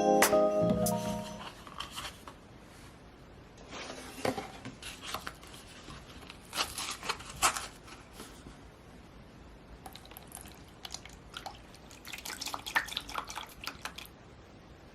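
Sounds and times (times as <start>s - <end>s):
mallet percussion music sting: 0.0s - 1.4s
objects being handled: 3.6s - 8.5s.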